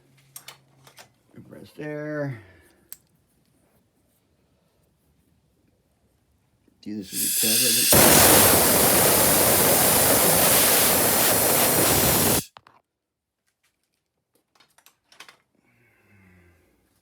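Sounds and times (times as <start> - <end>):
spray jet hissing: 7.0 - 12.5.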